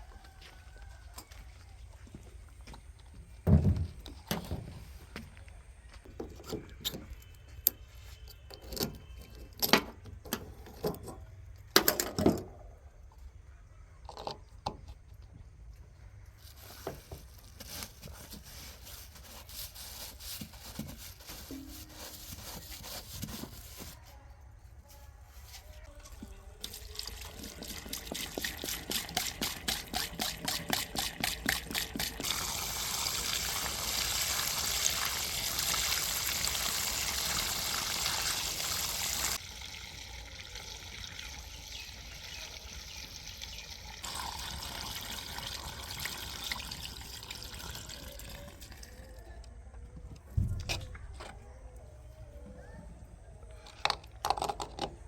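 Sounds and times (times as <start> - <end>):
rushing pouring noise: 31.6 - 43.4, 44.0 - 48.7.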